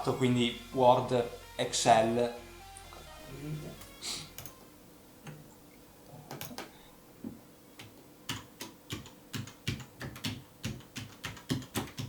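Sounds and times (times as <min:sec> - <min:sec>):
mechanical keyboard typing: 0:07.8 - 0:12.0.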